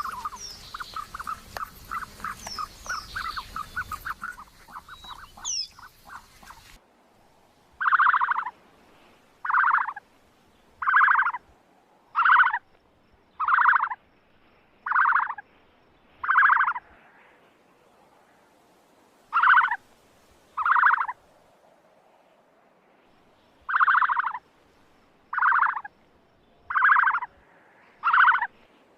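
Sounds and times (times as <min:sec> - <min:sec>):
ostrich buzzy calls: 0:00.0 - 0:06.8.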